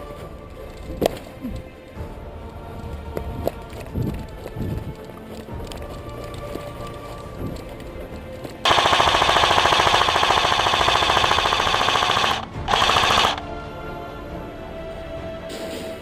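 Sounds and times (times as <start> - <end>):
airsoft gun firing full auto: 8.6 - 13.4.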